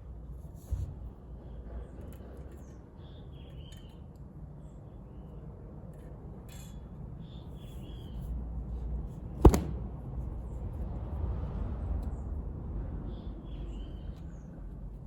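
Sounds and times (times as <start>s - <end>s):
sharp knock: 9.4s - 9.8s.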